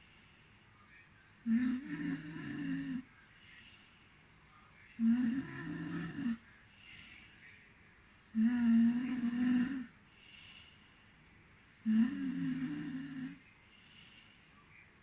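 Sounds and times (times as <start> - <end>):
faint breath: 0.0 - 0.8, 3.1 - 4.2, 6.5 - 7.6, 9.8 - 11.9, 13.3 - 14.9
person snoring: 1.5 - 3.0, 5.0 - 6.4, 8.4 - 9.9, 11.8 - 13.4.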